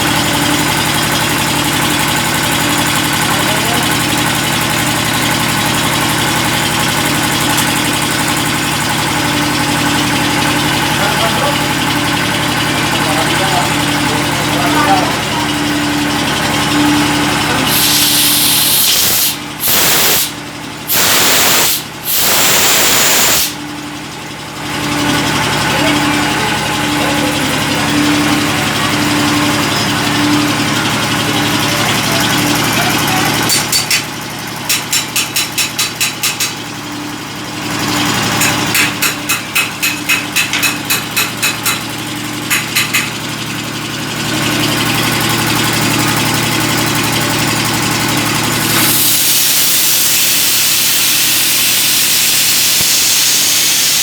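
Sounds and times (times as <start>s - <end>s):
steam boiler machine hum: 0.0s - 54.0s
steam hissing bursts: 17.7s - 23.6s, 48.6s - 54.0s.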